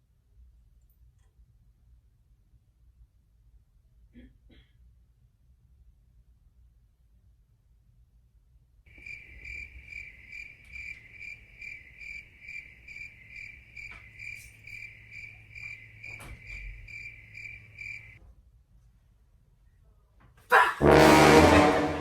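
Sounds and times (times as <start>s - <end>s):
cricket chirping: 8.9s - 18.2s.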